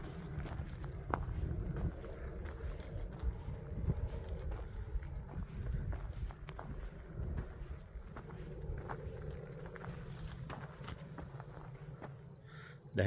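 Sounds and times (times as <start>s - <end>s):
footsteps scuffing: 0.0s - 12.3s
insects trilling: 0.0s - 13.0s.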